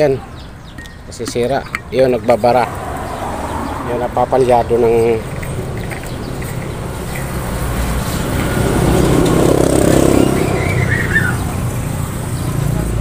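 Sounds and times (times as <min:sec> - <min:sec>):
vehicle engine running: 0:04.4 - 0:13.0.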